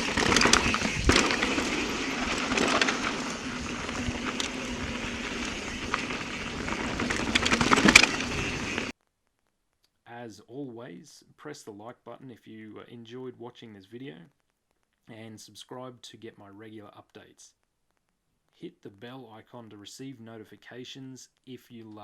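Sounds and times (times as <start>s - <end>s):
bike knocks and rattles: 0.0s - 8.9s
bike tyres rolling on trail: 0.0s - 8.9s.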